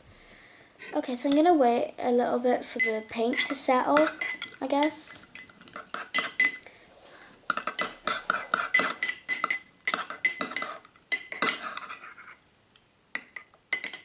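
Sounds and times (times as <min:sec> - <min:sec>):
utensil scraping a bowl: 0:02.8 - 0:06.6, 0:07.5 - 0:12.4.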